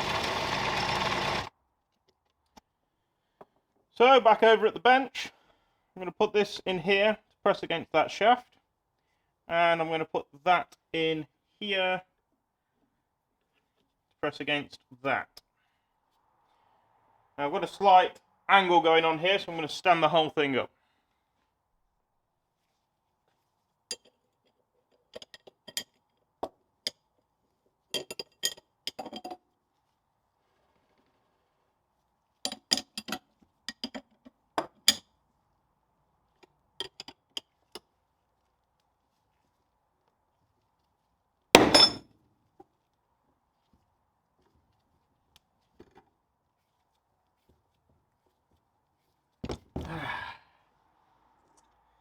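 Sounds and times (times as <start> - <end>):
sharp metallic bang: 41.6 - 42.0
steel parts clinking together: 41.6 - 42.0.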